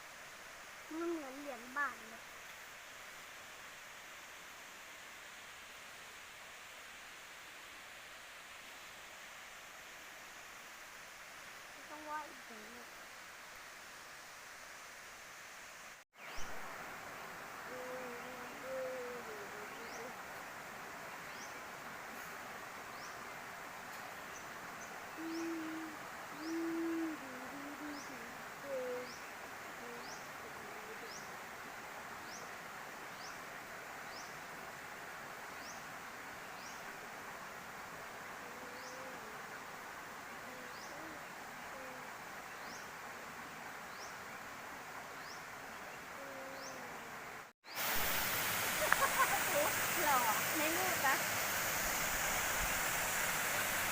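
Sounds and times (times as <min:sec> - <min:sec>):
steady forest hiss: 0:00.0 - 0:53.9
bird hooting: 0:17.7 - 0:20.2, 0:25.1 - 0:29.2, 0:38.4 - 0:39.4, 0:46.2 - 0:47.0, 0:48.8 - 0:50.4
faint low whistled calls: 0:24.2 - 0:31.3, 0:38.4 - 0:44.3, 0:45.1 - 0:47.1, 0:47.7 - 0:53.9
waterfall rushing: 0:46.6 - 0:53.9.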